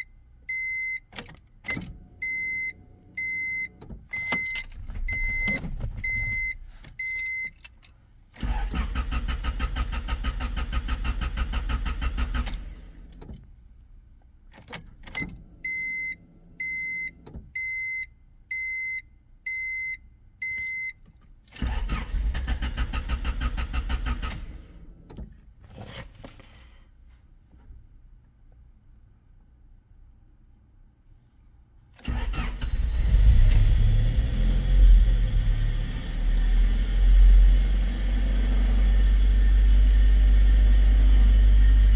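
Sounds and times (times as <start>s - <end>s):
car engine cranking: 3.8s - 17.4s, 21.4s - 26.3s, 32.0s - 41.9s.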